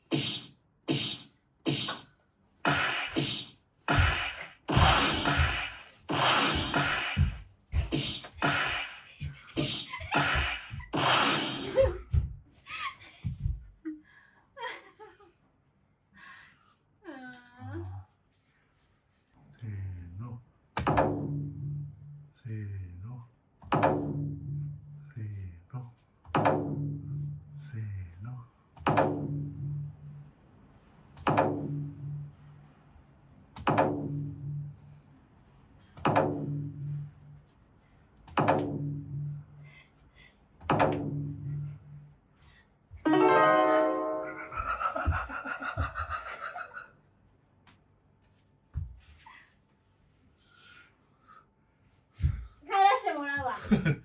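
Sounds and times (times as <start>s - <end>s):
person gasping and chuckling: 6.5s - 14.4s
low pulsing hum: 24.0s - 25.5s, 29.0s - 30.4s, 31.3s - 32.8s, 33.9s - 35.1s, 36.2s - 37.6s, 38.5s - 39.9s, 40.8s - 42.2s.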